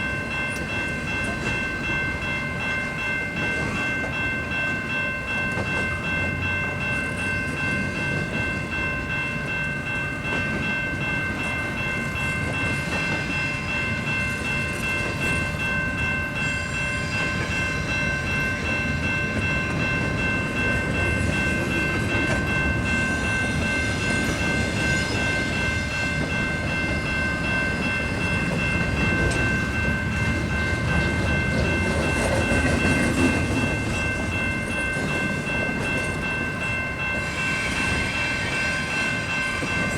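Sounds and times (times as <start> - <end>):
freight train wheels rumbling: 0.0 - 39.9.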